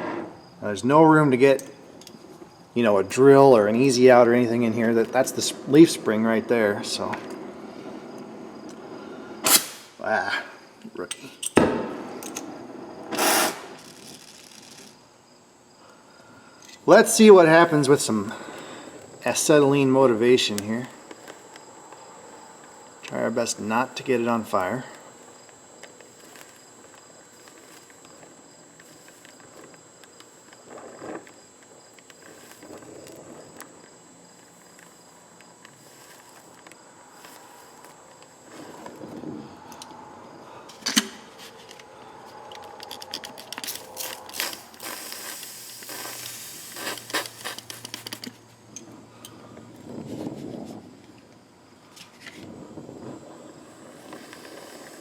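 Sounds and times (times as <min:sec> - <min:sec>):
torch flame hissing: 0:00.0 - 0:00.8, 0:03.4 - 0:10.6, 0:11.6 - 0:15.1, 0:16.9 - 0:40.6, 0:41.3 - 0:48.4, 0:52.4 - 0:55.0
clicks and crackles: 0:13.5 - 0:15.0, 0:24.5 - 0:40.0, 0:40.7 - 0:49.4, 0:53.8 - 0:55.0.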